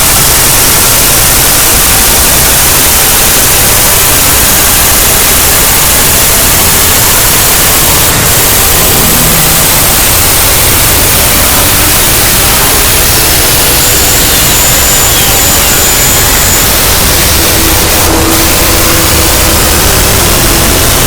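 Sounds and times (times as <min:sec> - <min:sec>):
loud distorted static noise: 0:00.0 - 0:21.0
thin high steady tone: 0:00.0 - 0:21.0.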